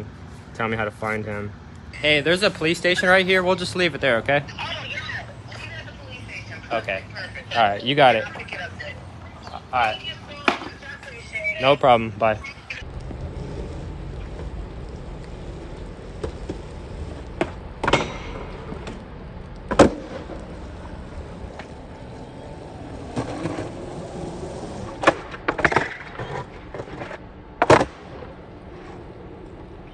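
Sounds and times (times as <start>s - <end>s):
skateboard wheels rolling on pavement: 0.0s - 29.9s
skateboard clacks: 10.4s - 10.8s, 12.8s - 24.0s, 24.8s - 29.9s.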